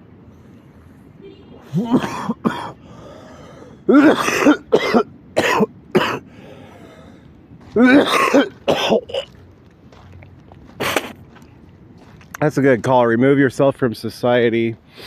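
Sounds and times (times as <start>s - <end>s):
person coughing: 1.6s - 2.8s, 3.9s - 6.2s, 7.8s - 9.3s.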